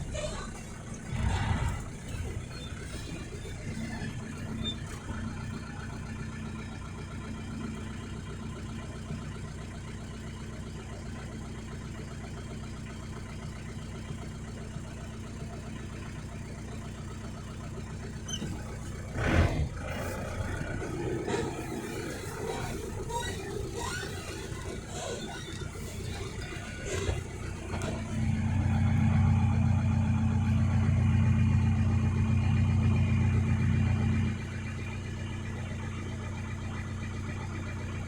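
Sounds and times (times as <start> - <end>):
engine running: 0.0 - 38.0.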